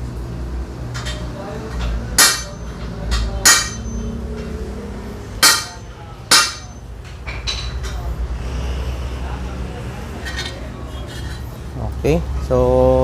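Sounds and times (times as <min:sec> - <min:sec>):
hammer striking metal: 0:02.2 - 0:04.5, 0:05.4 - 0:06.9.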